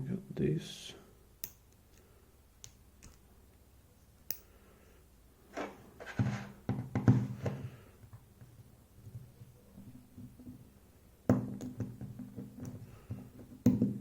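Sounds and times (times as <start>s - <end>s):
small sharp clicks: 1.4s - 3.2s, 4.2s - 4.5s.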